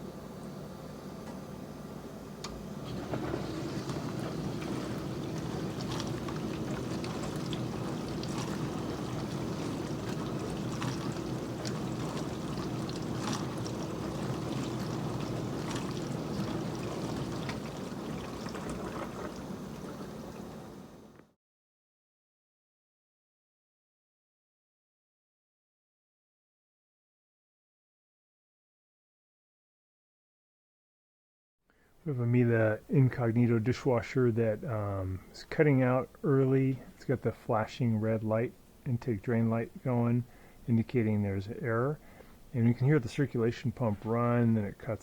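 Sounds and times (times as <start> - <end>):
steady hum: 0.0 - 21.2
dishwasher pump running: 2.1 - 21.2
water spraying and splashing: 2.8 - 20.8.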